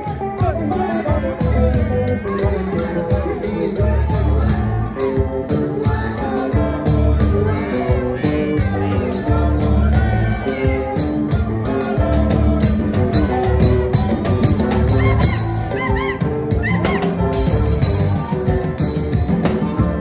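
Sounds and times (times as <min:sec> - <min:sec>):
bass line: 0:00.0 - 0:20.0
drum kit beat: 0:00.0 - 0:20.0.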